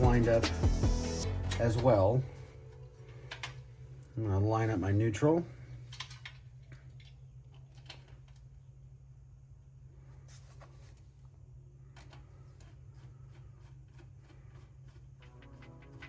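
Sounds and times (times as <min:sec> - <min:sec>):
background music: 0:00.0 - 0:02.9, 0:15.2 - 0:16.0.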